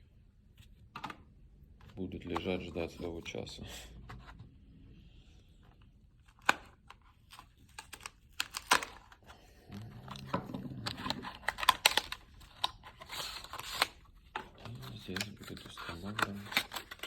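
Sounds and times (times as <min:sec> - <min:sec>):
packaging rustling and crinkling: 0:06.2 - 0:17.0.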